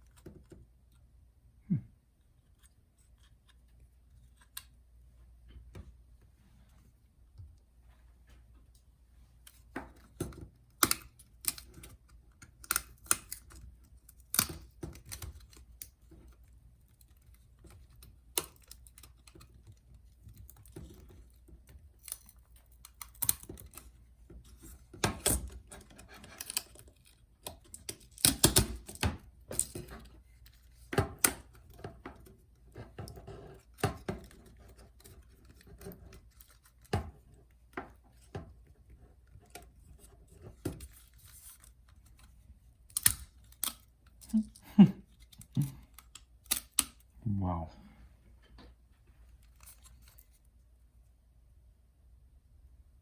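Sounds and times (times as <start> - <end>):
plastic clicks and snaps: 45.2 - 47.1.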